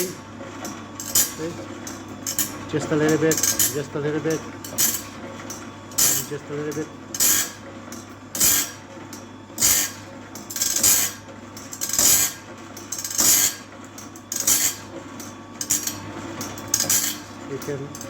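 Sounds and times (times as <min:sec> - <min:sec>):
motor humming: 0:00.0 - 0:12.4
blade grinding rasp: 0:04.7 - 0:05.2, 0:06.0 - 0:06.4, 0:07.2 - 0:07.6, 0:08.4 - 0:08.8, 0:09.6 - 0:11.2, 0:11.8 - 0:12.4, 0:13.0 - 0:13.7, 0:14.4 - 0:14.9, 0:16.7 - 0:17.3.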